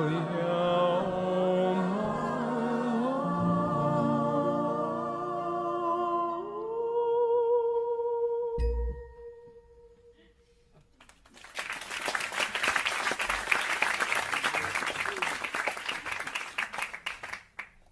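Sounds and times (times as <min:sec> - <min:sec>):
applause: 0:11.0 - 0:17.9.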